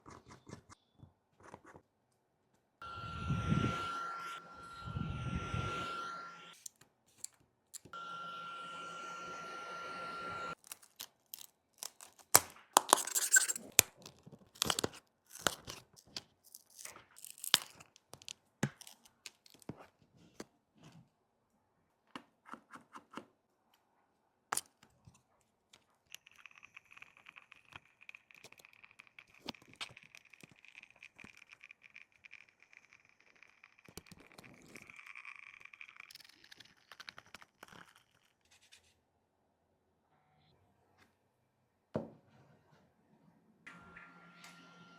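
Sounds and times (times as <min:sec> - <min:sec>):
faint high whine: 0:02.8 - 0:06.6, 0:08.0 - 0:10.6, 0:43.7 - 0:44.9
tearing noises: 0:10.6 - 0:18.0
sharp clicks and scrapes: 0:10.6 - 0:19.8.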